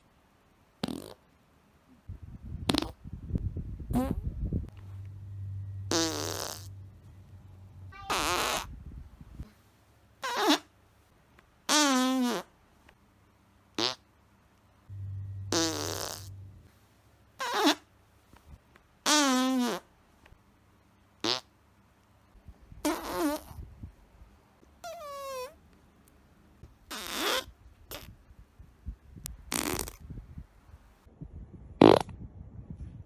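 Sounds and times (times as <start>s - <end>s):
fart sound effects: 0.8s - 1.2s, 2.6s - 3.0s, 3.9s - 5.0s, 5.8s - 7.0s, 7.9s - 8.7s, 10.2s - 10.7s, 11.7s - 12.5s, 13.8s - 14.0s, 14.9s - 16.6s, 17.4s - 17.9s, 19.1s - 19.9s, 21.2s - 21.5s, 22.8s - 23.6s, 26.9s - 28.1s, 29.5s - 30.0s, 31.8s - 32.2s.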